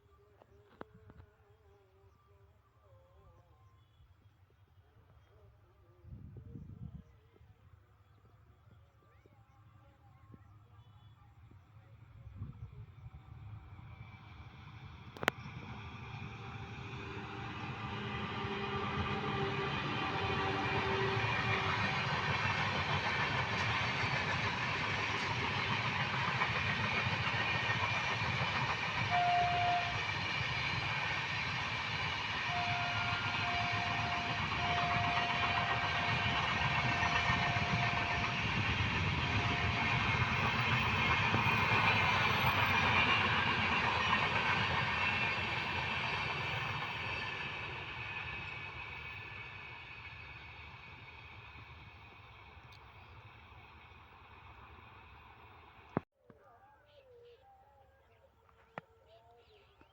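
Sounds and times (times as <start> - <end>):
train rumbling past: 11.5 - 56.0
train horn blasts: 16.2 - 22.6, 28.9 - 30.7, 32.3 - 41.0.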